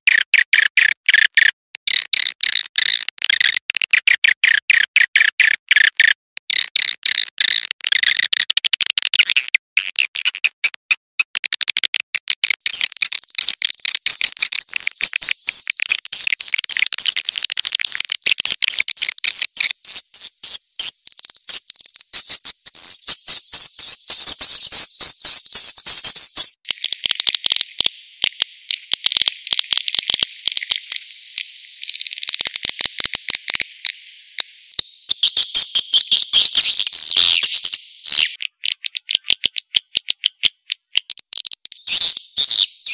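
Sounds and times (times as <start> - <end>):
swiftlet calls chattering trills: 12.7 - 26.6.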